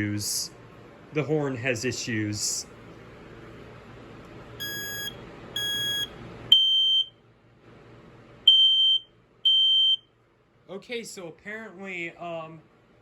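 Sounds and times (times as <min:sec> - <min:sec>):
smoke alarm beeping: 0:04.6 - 0:07.2, 0:08.5 - 0:10.1.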